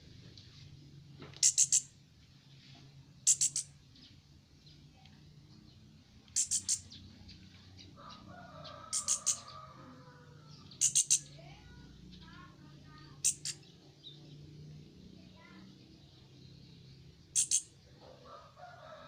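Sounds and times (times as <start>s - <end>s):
bird high chirps: 1.4s - 1.9s, 3.2s - 4.2s, 6.3s - 7.2s, 8.9s - 9.6s, 10.5s - 11.4s, 13.2s - 14.2s, 17.3s - 17.8s
lower warbling bird call: 17.4s - 17.7s.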